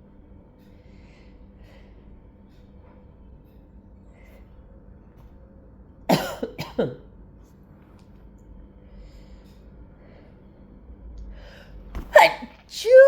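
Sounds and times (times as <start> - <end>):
stifled sneezes: 12.0 - 13.0.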